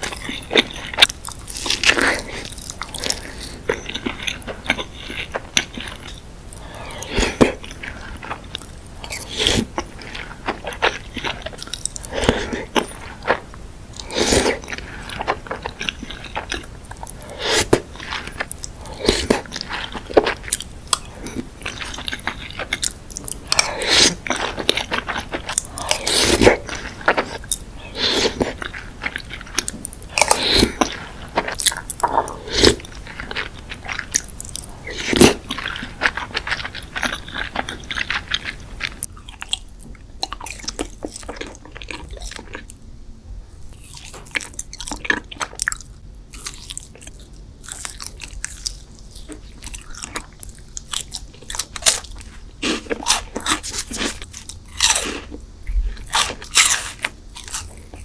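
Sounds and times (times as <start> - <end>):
background hiss: 0.0 - 39.1
crunchy chewing: 0.0 - 42.8, 43.6 - 58.0.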